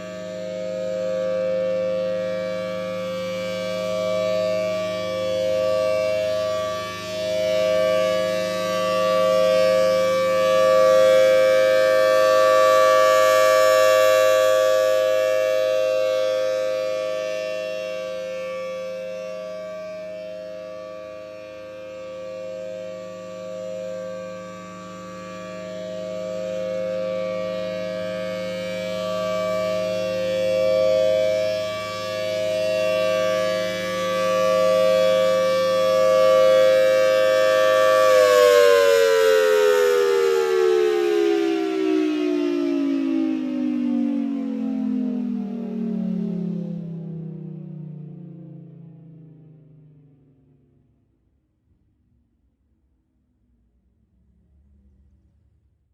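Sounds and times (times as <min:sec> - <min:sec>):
tornado siren two-note chord: 0:00.0 - 0:51.0.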